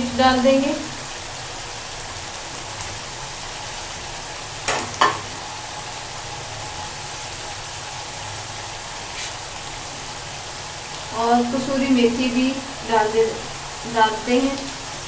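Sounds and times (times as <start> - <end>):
food sizzling in a pan: 0.0 - 15.0
sharp knocks: 4.7 - 5.4.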